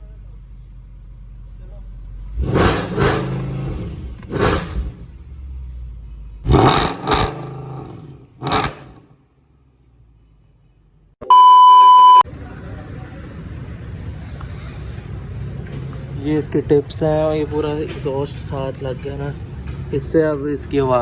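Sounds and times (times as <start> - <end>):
car engine revving: 2.2 - 9.3.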